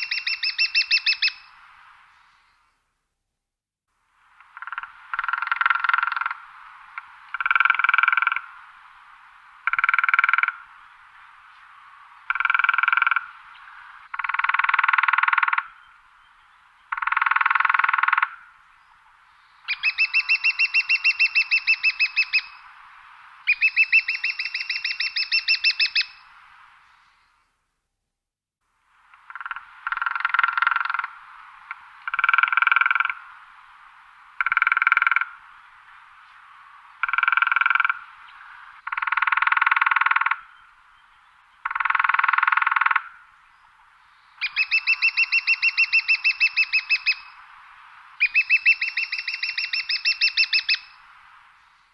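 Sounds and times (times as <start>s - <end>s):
woodpecker drumming on wood: 4.4s - 6.4s, 9.7s - 10.6s, 16.9s - 18.4s, 29.2s - 31.1s, 31.7s - 33.2s, 34.4s - 35.3s, 37.0s - 38.0s, 41.6s - 43.2s.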